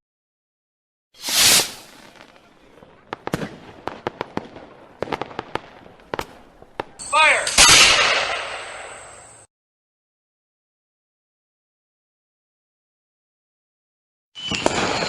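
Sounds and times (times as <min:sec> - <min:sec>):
fireworks hissing burst: 0:01.2 - 0:03.5
fireworks crackling bangs: 0:01.2 - 0:09.5, 0:14.4 - 0:15.0.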